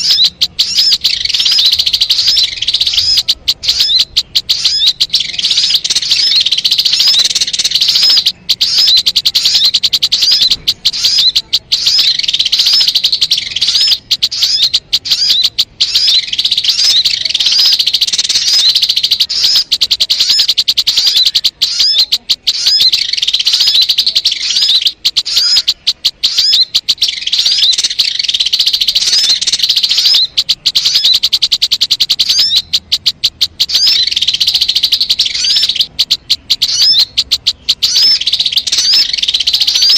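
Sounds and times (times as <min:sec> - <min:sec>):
bird twittering chatter: 0:00.0 - 0:39.9.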